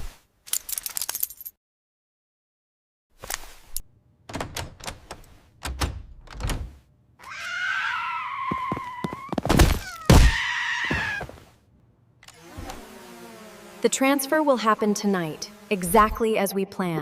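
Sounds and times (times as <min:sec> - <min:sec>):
thuds and knocks: 0:09.4 - 0:10.4.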